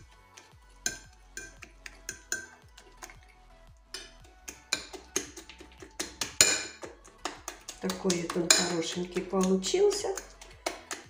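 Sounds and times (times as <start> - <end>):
metal utensil clinking on dish: 0.8 - 3.2, 6.4 - 6.9, 7.9 - 9.2.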